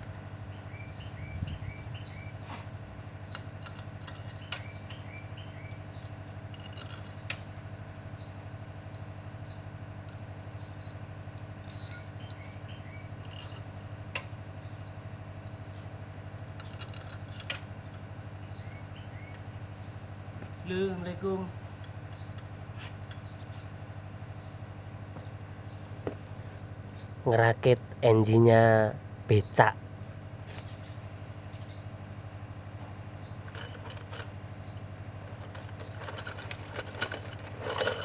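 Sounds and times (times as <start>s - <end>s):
steady low hum: 0.0s - 38.0s
small birds chirping: 0.4s - 3.6s, 4.2s - 6.3s, 8.1s - 8.5s, 9.4s - 9.7s, 12.2s - 13.6s, 14.5s - 14.9s, 17.8s - 22.5s, 23.1s - 26.0s, 26.8s - 27.2s, 30.5s - 31.9s, 33.1s - 33.5s.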